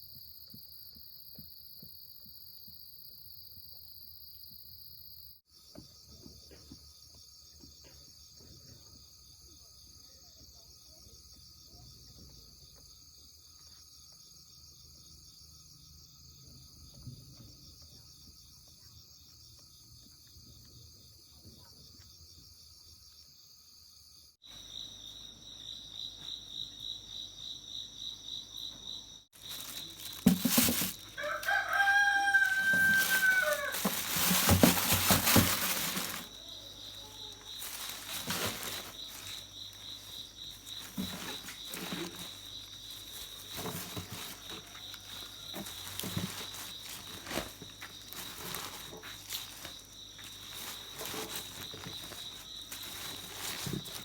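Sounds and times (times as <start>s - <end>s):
loud rustling: 29.4s - 36.4s, 37.3s - 54.0s
rooster crowing: 30.8s - 35.6s.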